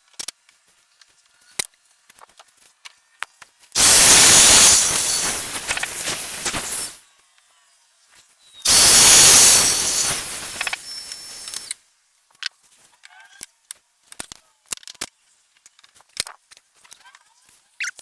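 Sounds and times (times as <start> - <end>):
power tool motor whirring: 3.8 - 7.0, 8.7 - 11.7.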